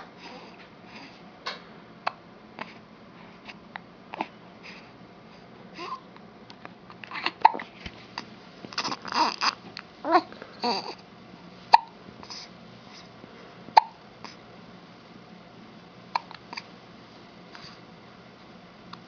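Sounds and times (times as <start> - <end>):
baby hiccuping: 7.2 - 7.6, 11.7 - 12.0, 13.7 - 14.0, 16.1 - 16.4
baby babbling: 8.8 - 11.0.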